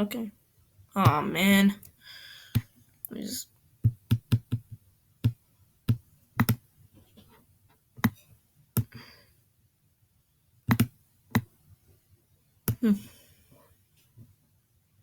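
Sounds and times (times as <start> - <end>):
computer mouse clicks: 4.1 - 6.6, 10.7 - 11.5.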